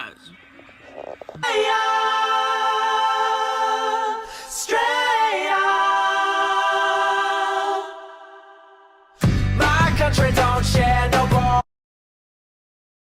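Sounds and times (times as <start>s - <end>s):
choir singing held notes: 1.3s - 9.2s.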